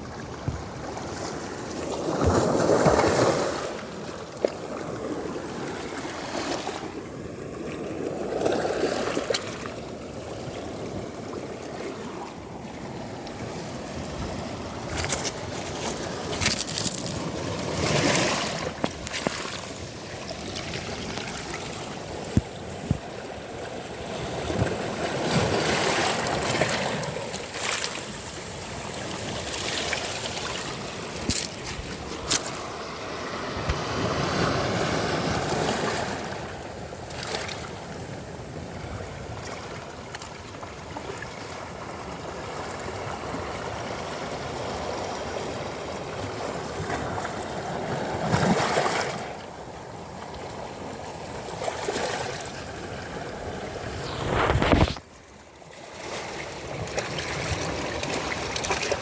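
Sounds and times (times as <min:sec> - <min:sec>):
sea waves washing on beach: 0:00.0 - 0:55.2.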